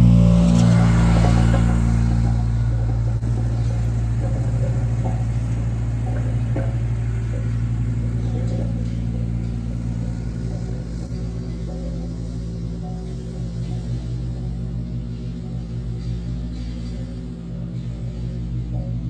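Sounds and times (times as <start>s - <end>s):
machinery engine running: 0.0s - 19.0s.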